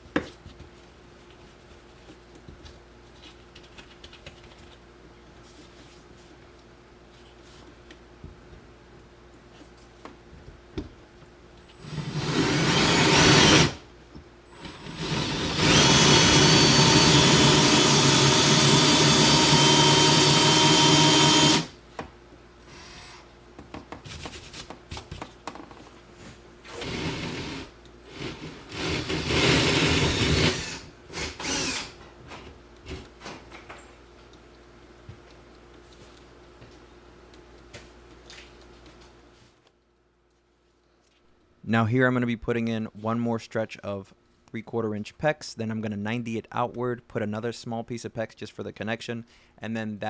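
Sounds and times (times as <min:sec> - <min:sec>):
power drill whining: 0:11.7 - 0:13.8, 0:14.5 - 0:21.7, 0:26.7 - 0:32.0.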